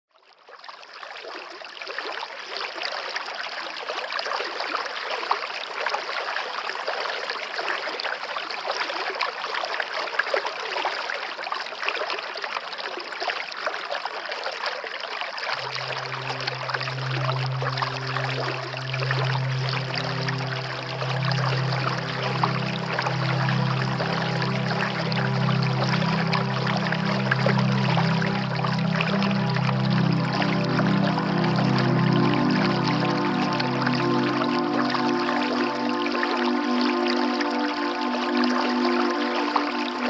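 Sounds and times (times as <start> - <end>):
running water: 0.4 - 40.0
low held music note: 15.6 - 40.0.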